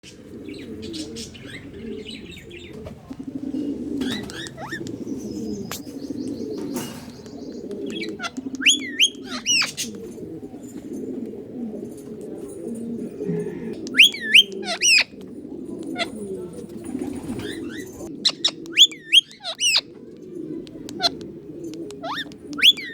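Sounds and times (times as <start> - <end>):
low cooing warble: 0.0 - 22.9
sharp sweeping high bird calls: 4.0 - 9.8, 13.9 - 15.1.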